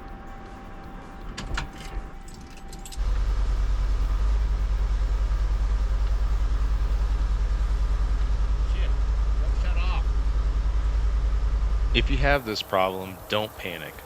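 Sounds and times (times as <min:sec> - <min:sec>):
car engine running: 0:00.0 - 0:13.8
steady warning tone: 0:00.0 - 0:14.0
keys jangling: 0:01.2 - 0:03.1.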